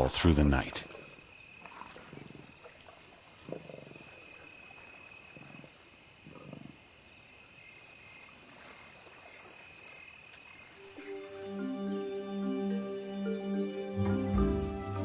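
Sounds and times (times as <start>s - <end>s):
night insects chorus: 0.0s - 15.0s
lions growling: 3.4s - 4.2s.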